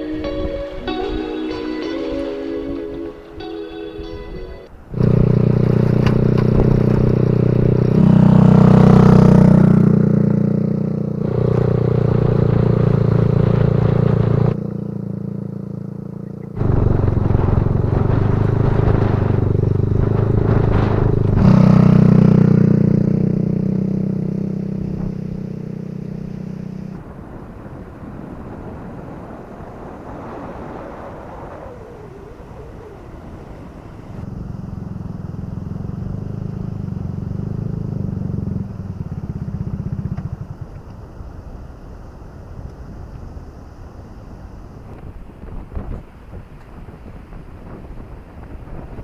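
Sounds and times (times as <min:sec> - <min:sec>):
motorcycle engine revving: 0:04.9 - 0:27.1, 0:31.7 - 0:41.4.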